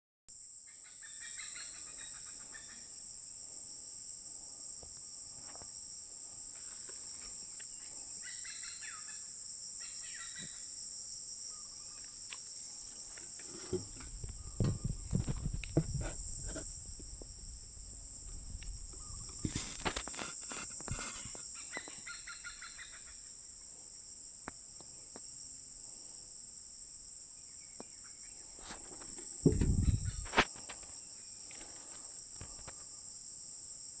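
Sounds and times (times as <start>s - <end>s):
insect chorus: 0.3s - 34.0s
low thump: 13.6s - 17.4s, 29.4s - 30.2s.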